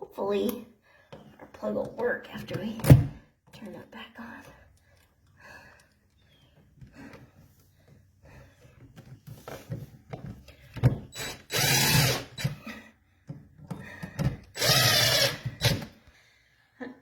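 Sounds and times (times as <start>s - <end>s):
power drill driving screws: 11.1s - 12.6s, 14.5s - 16.0s.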